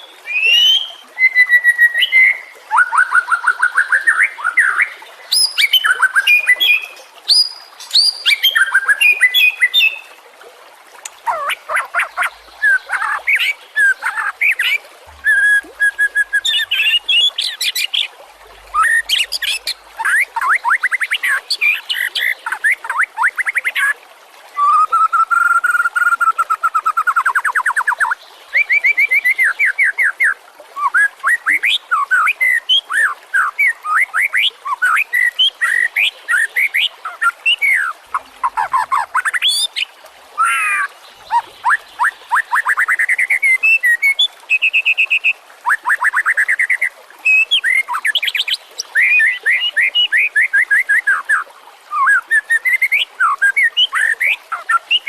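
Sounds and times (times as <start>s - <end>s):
songbird singing varied whistles: 0.0s - 10.0s, 12.2s - 17.8s.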